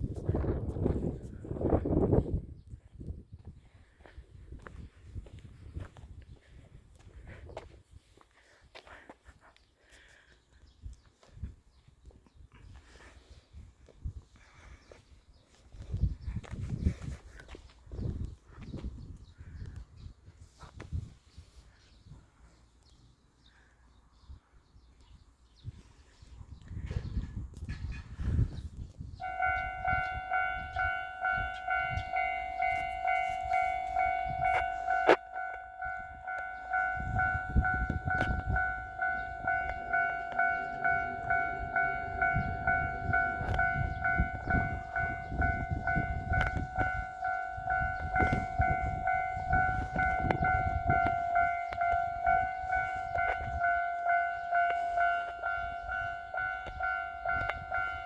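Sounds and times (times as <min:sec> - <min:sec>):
diesel train rumble: 0:29.2 - 0:58.0
level-crossing alarm bell ringing: 0:29.2 - 0:58.0.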